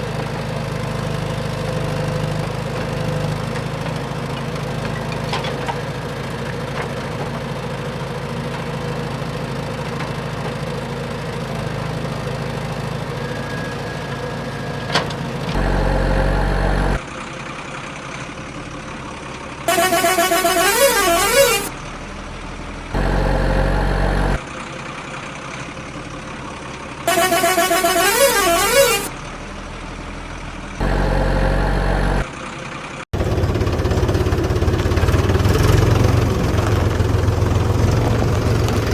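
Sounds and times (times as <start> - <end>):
toy engine hum: 19.7 - 21.7
warbling siren-like tune: 19.7 - 21.7
electronic horn honks: 19.7 - 21.8, 27.1 - 29.1, 30.8 - 32.2.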